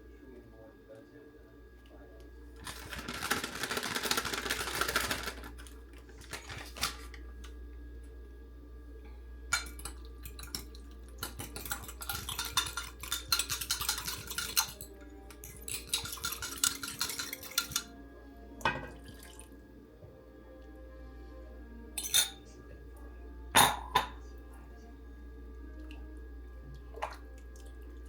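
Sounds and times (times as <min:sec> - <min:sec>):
steady low hum: 0:00.0 - 0:28.0
metal utensils clinking on cookware: 0:09.5 - 0:17.9, 0:22.0 - 0:22.4.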